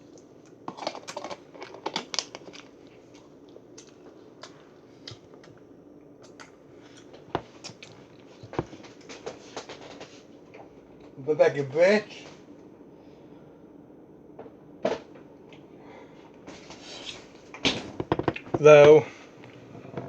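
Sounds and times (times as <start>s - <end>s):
rustling and crinkling: 6.8s - 10.5s.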